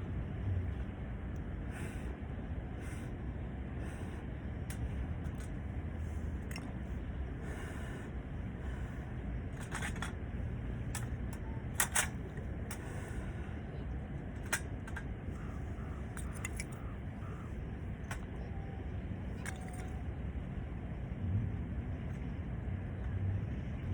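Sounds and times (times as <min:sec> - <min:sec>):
steady low rumble: 0:00.0 - 0:23.9.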